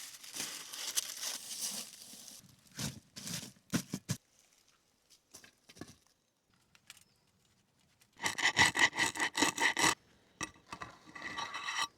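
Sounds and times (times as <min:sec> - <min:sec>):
blade rasping across crusty bread: 0:08.2 - 0:10.0.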